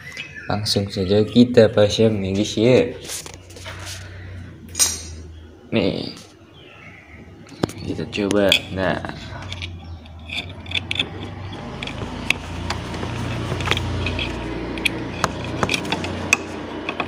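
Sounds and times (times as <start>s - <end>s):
steady low hum: 1.3s - 17.0s
clicks and rattles of handling: 7.5s - 17.0s.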